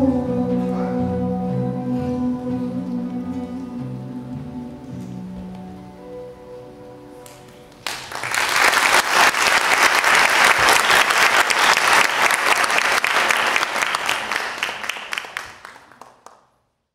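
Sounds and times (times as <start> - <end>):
audience applauding: 7.7 - 16.6.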